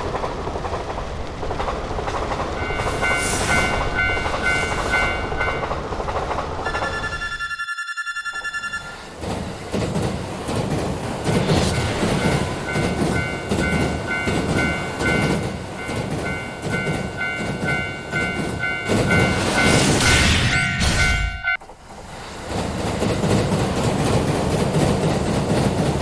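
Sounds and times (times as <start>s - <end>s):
train wheels clickety-clack: 0.0s - 7.4s, 9.0s - 26.0s
level-crossing bell ringing: 2.6s - 5.8s, 6.6s - 9.2s, 12.0s - 21.6s.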